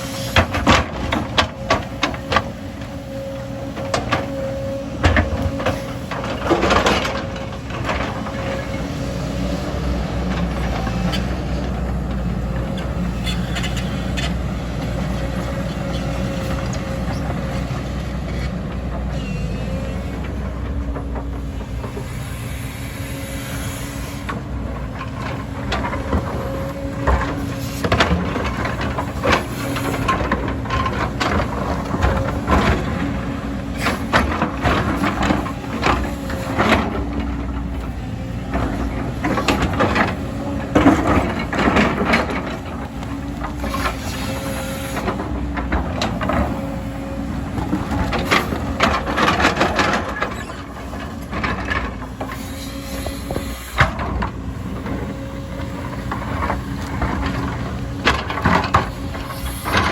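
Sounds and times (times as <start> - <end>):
diesel engine running: 0.0 - 59.9
metal clanks and scraping: 20.1 - 59.9.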